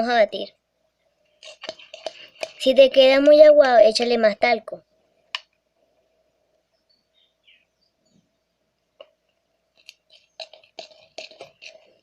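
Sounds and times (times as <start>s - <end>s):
faint steady hum: 0.0s - 12.0s
faint high chirps: 6.6s - 8.6s.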